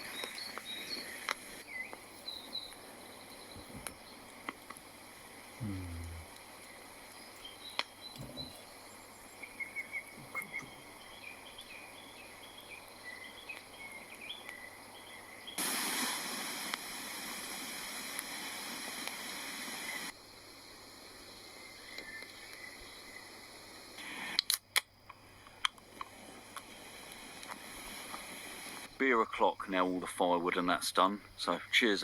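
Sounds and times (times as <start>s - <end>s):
birds chirping: 0.0s - 15.6s
faint background hiss: 0.0s - 32.0s
loud steady hiss: 0.0s - 32.0s.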